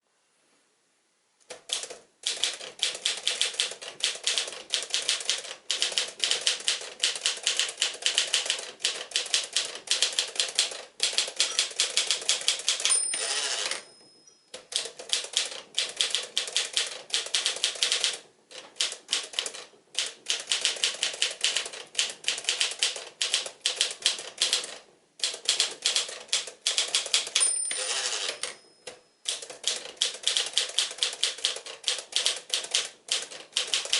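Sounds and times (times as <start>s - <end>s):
typewriter key strikes: 1.5s - 14.0s, 18.8s - 33.9s
typewriter margin bell: 11.1s - 18.0s, 26.7s - 31.3s
typewriter carriage return scrape: 12.8s - 13.9s, 27.3s - 28.6s.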